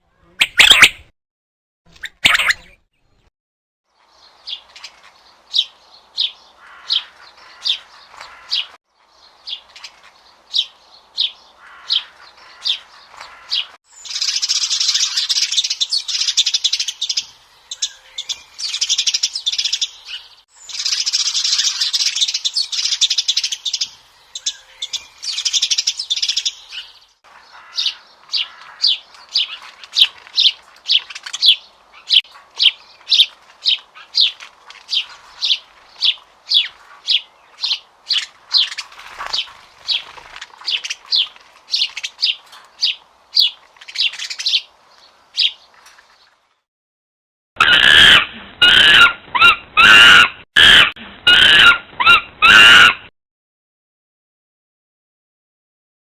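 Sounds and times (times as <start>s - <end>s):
small birds chirping: 3.9s - 46.7s.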